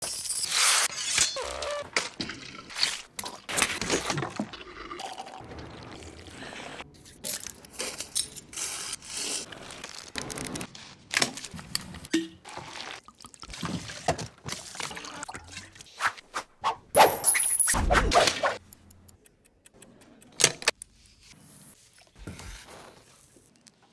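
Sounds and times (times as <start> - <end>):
liquor pouring into glasses: 4.4 - 6.3.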